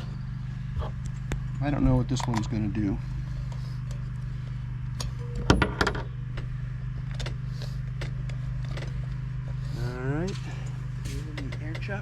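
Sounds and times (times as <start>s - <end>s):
low hum: 0.0s - 12.0s
tools clattering: 10.3s - 12.0s.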